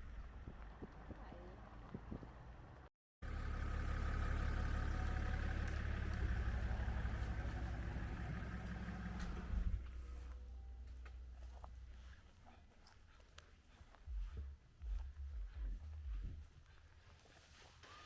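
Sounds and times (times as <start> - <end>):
car engine running: 0.3 - 10.2.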